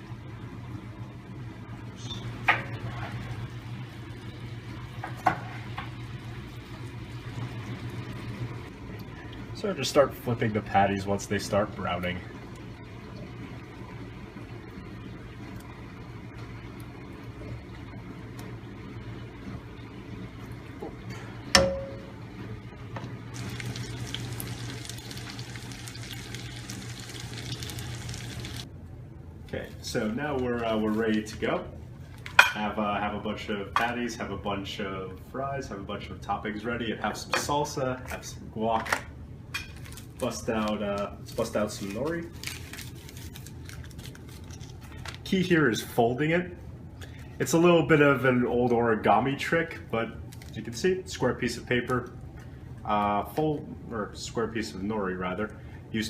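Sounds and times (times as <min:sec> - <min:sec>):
steady low hum: 0:00.0 - 0:56.0
patties sizzling in a frying pan: 0:23.4 - 0:28.6.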